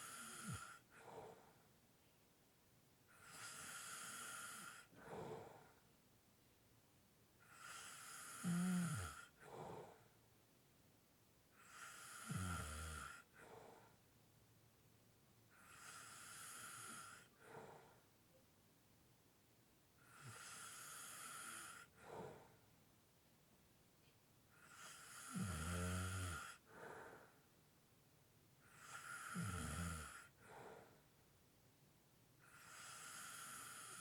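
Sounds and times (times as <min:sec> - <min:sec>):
person snoring: 0:00.0 - 0:00.8, 0:03.1 - 0:05.7, 0:07.4 - 0:10.0, 0:11.6 - 0:13.3, 0:20.0 - 0:22.5, 0:24.6 - 0:26.6, 0:28.7 - 0:30.3, 0:32.4 - 0:34.0
heavy breathing: 0:26.7 - 0:27.4, 0:30.4 - 0:31.0.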